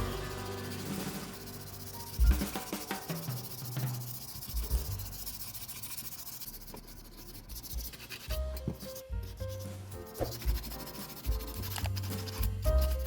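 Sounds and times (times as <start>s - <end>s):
background music with low bass: 0.0s - 5.3s, 8.3s - 13.0s
hand sanding scratchy hiss: 0.0s - 13.0s.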